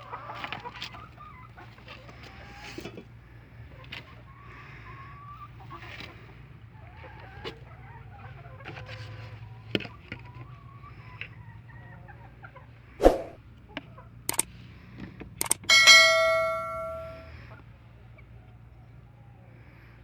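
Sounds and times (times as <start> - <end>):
chickens clucking: 0.0 - 2.8
sharp clicks: 15.4 - 15.8.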